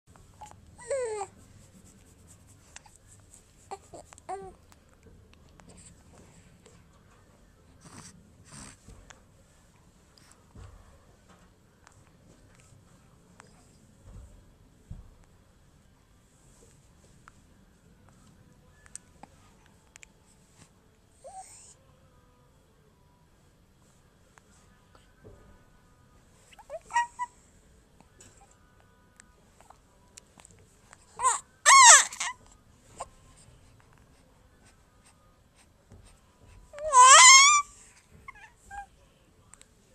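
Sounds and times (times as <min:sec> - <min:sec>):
baby squealing: 0:31.2 - 0:32.4, 0:36.8 - 0:37.7.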